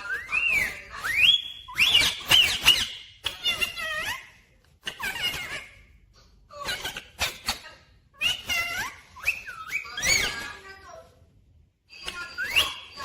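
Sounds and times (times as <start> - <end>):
parrot whistled calls: 0.0 - 4.2, 8.2 - 10.5, 11.9 - 13.0.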